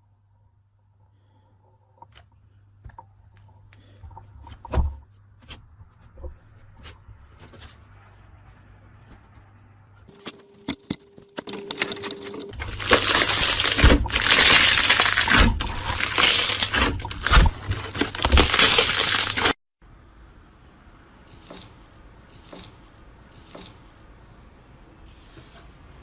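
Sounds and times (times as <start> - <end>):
slime squeezed and crackling: 12.6 - 19.5.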